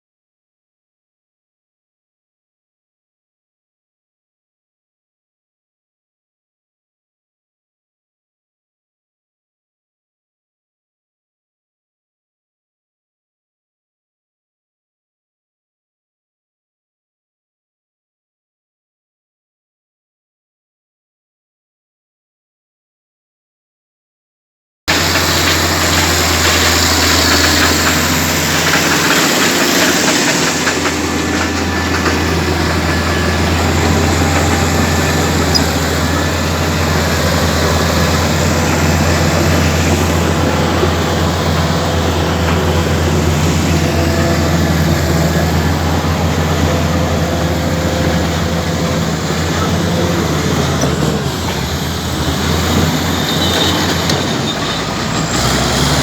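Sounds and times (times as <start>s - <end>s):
bulldozer diesel engine droning: 24.9s - 56.0s.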